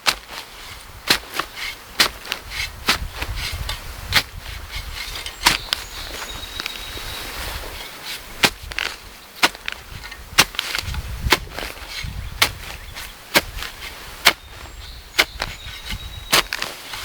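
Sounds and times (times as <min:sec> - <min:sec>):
rustling: 0:00.0 - 0:17.0.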